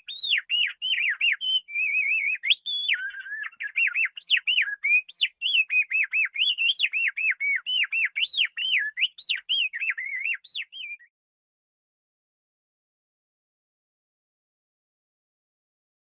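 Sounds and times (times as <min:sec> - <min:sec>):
canary singing: 0:00.0 - 0:11.1.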